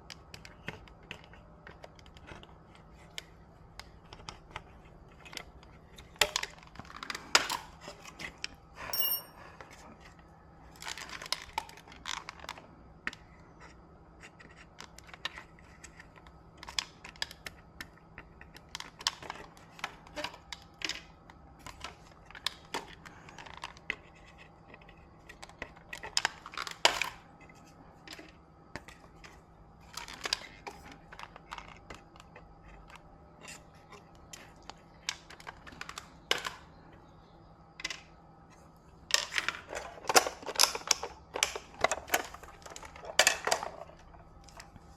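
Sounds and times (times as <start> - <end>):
tools clicking and scraping: 8.9 - 9.4.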